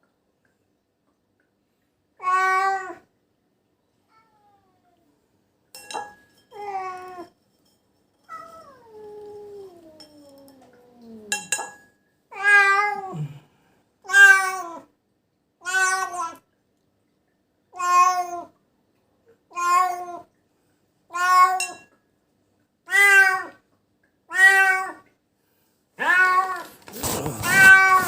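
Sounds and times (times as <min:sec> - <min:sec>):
cat moaning: 0:08.3 - 0:11.5, 0:26.0 - 0:28.0
cat meowing in distress: 0:26.0 - 0:28.0.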